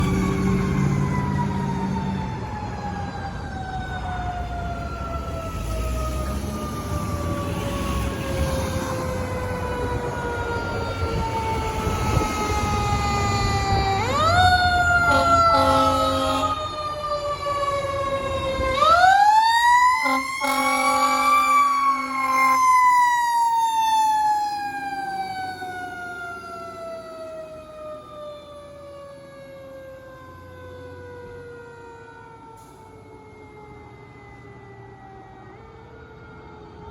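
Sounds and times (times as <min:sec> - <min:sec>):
fire truck siren: 0:00.0 - 0:36.9
air horn blasts: 0:15.1 - 0:16.8, 0:20.0 - 0:22.6.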